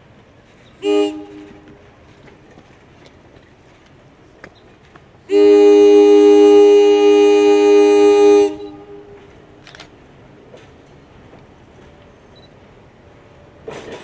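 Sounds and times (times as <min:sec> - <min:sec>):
locomotive air horn blast: 0:00.8 - 0:01.8, 0:05.3 - 0:09.4.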